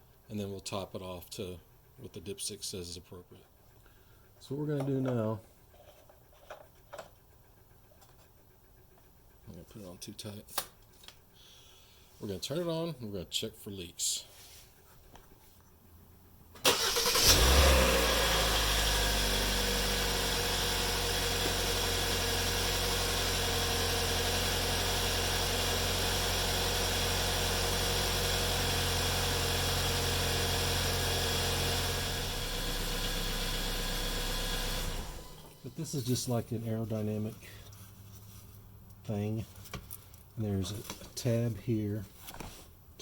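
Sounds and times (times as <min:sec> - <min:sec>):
car engine starting and idling: 0:16.6 - 0:35.7.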